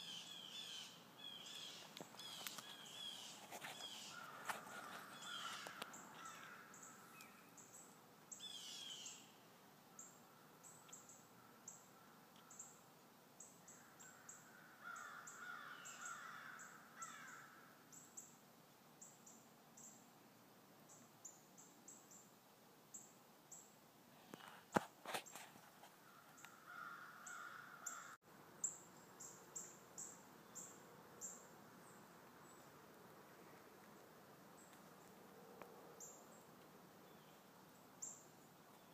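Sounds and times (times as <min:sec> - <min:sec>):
harsh bird calls: 0:00.0 - 0:07.7.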